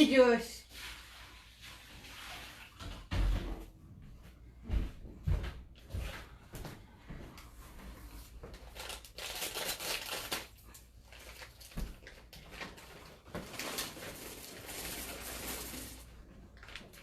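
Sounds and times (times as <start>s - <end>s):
plastic bag rustling: 8.0s - 17.0s.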